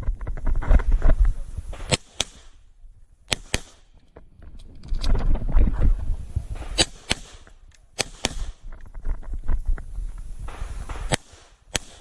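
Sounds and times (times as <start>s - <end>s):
low rumbling movement noise: 0.0s - 11.7s
pistol shots: 1.7s - 2.6s, 3.3s - 4.0s, 6.6s - 8.6s, 10.5s - 12.0s.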